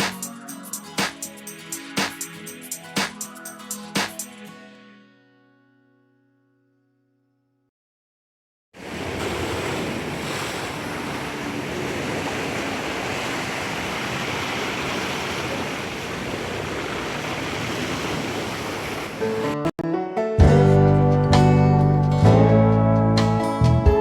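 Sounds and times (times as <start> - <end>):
surf washing ashore: 8.8 - 19.7.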